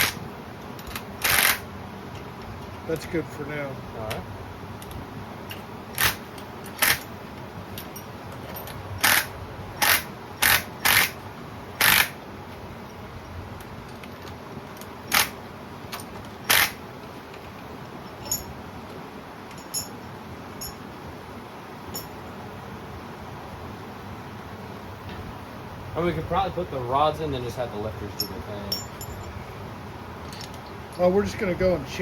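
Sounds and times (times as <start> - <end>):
metal tools clicking and clinking: 18.0 - 18.6, 19.5 - 20.0, 20.6 - 20.8, 21.9 - 22.3, 28.1 - 29.4, 30.2 - 31.0.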